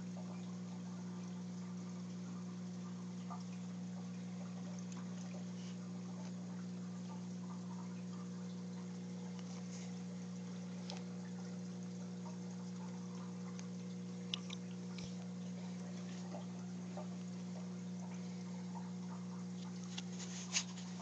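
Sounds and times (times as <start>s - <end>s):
aquarium pump humming: 0.0s - 21.0s
faint water trickling: 0.0s - 21.0s.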